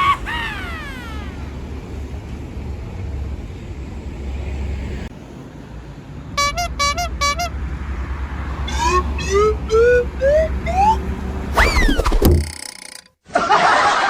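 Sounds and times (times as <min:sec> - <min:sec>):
low engine rumble: 0:00.0 - 0:11.6
multi-tone bus horn toots: 0:06.4 - 0:07.9, 0:08.6 - 0:11.5.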